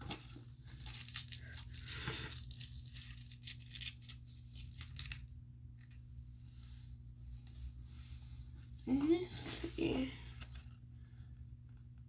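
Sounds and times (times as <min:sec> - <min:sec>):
packaging crinkling: 0:00.0 - 0:06.0
plastic pieces clicking and rattling: 0:00.8 - 0:05.3.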